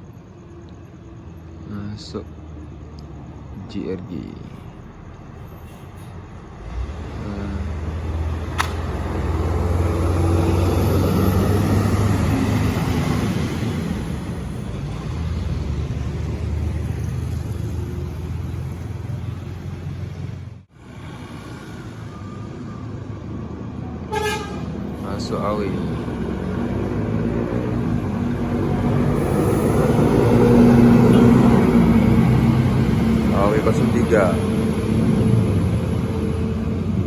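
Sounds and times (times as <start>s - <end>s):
bus driving past: 0.0s - 37.0s
diesel engine drone: 0.0s - 37.0s
road noise: 0.0s - 37.0s
sharp click: 8.5s - 8.8s.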